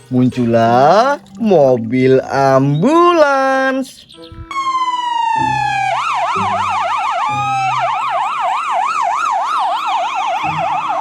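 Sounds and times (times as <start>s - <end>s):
low pulsing notes: 4.1s - 9.1s, 10.4s - 11.0s
ambulance siren wailing and yelping: 4.4s - 11.0s.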